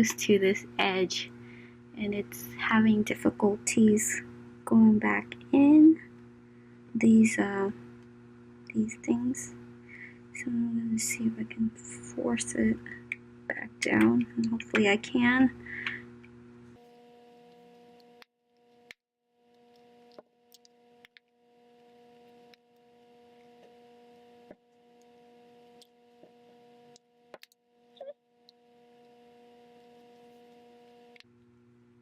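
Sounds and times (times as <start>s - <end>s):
faint steady hum: 0.0s - 18.9s, 19.5s - 32.0s.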